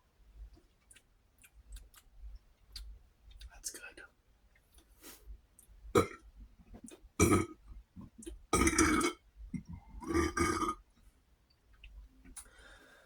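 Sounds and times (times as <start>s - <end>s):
man burping: 6.0s - 6.2s, 7.2s - 7.6s, 8.6s - 9.2s, 10.0s - 10.8s.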